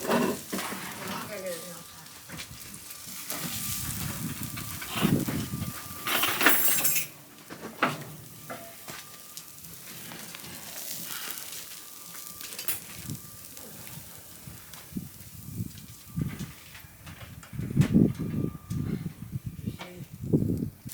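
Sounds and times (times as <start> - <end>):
utensils clinking against pan: 6.0 - 7.2.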